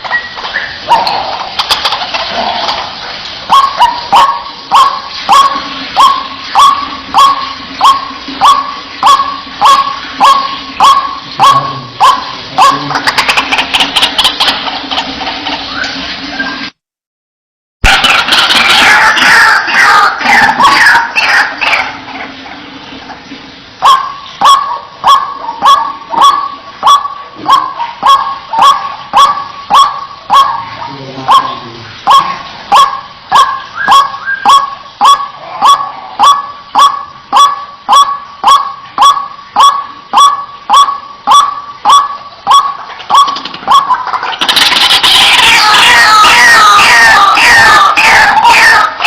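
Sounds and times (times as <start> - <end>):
waterhen croaking: 0.0 - 16.7, 17.9 - 49.0
sharp kwak calls: 3.5 - 15.0, 23.8 - 49.0.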